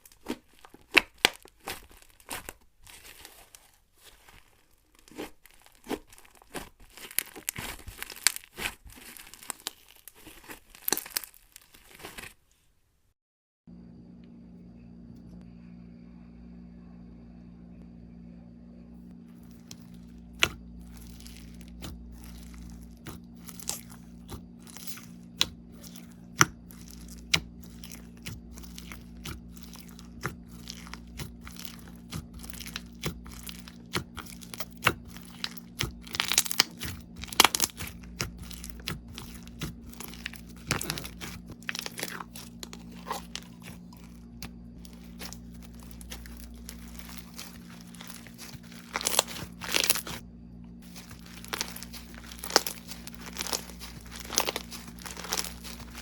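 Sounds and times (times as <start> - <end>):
crunchy slime crackling and popping: 0.0 - 12.4, 19.3 - 50.2, 50.8 - 56.0
steady low hum: 13.7 - 56.0.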